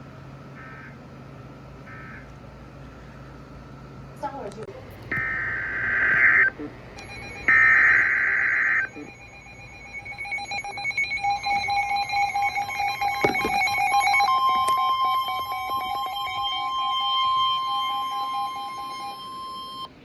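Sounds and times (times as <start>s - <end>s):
screeching digital data burst: 5.2s - 19.8s
steady alert tone: 5.2s - 19.9s
higher alert tone: 6.1s - 19.9s.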